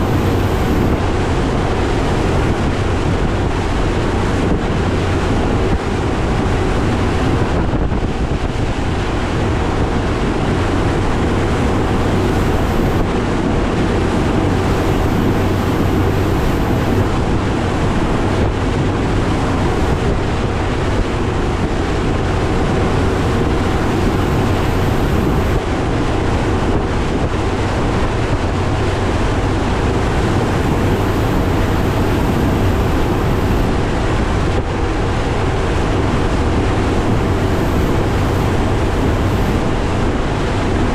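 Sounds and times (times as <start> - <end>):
outboard motor running: 0.0 - 40.9
wind buffeting microphone: 0.0 - 40.9.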